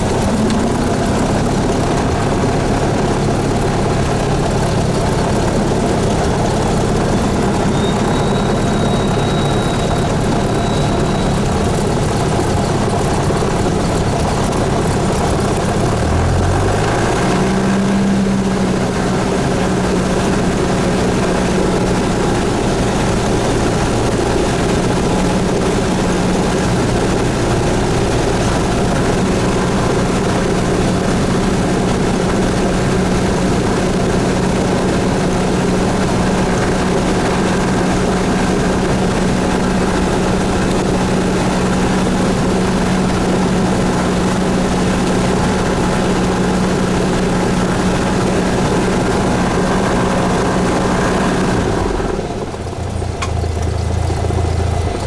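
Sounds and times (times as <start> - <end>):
light aircraft engine and propeller: 0.0 - 55.0.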